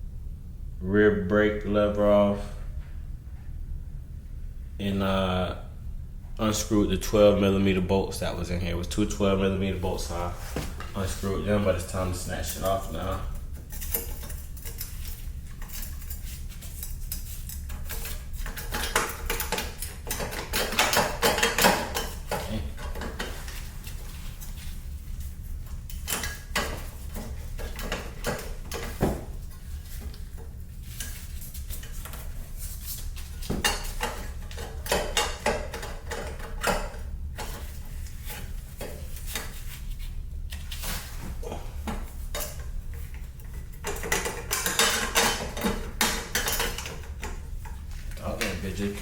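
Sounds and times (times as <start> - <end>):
metallic clanks and rattles: 12.4 - 24.8, 25.8 - 39.6, 41.5 - 47.8.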